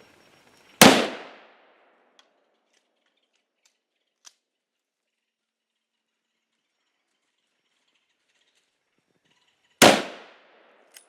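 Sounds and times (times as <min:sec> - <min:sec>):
rifle shot with echo: 0:00.8 - 0:01.8, 0:09.8 - 0:10.7.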